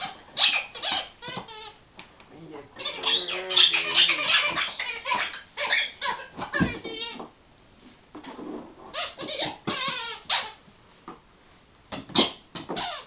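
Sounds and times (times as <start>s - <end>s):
rubber squeaky toy squeaking: 0.0s - 1.8s, 2.8s - 7.3s, 8.9s - 10.6s, 12.0s - 13.0s.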